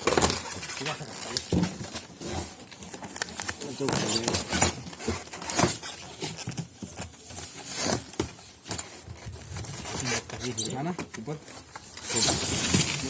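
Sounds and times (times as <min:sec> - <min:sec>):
packaging rustling and knocking: 0:00.0 - 0:13.0.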